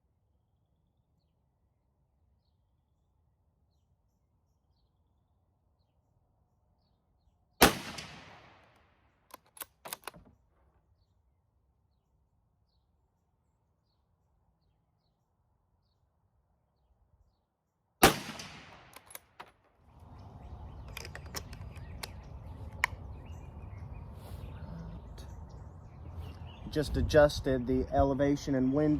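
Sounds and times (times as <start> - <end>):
rifle shots echoing: 7.6 - 8.8, 18.0 - 19.4
rifle bolt clicks: 9.3 - 10.4, 18.0 - 19.5, 20.8 - 23.0.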